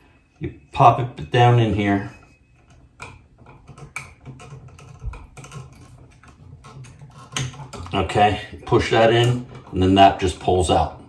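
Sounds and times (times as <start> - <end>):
screwdriver clicking and scraping metal: 2.6 - 8.0.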